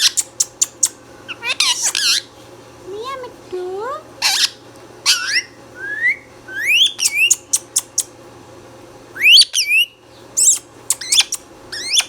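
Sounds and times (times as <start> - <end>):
parrot sharp chirps: 0.0 - 2.3, 4.2 - 8.1, 9.2 - 12.0
parrot rising whistle: 5.1 - 7.8, 9.2 - 12.0.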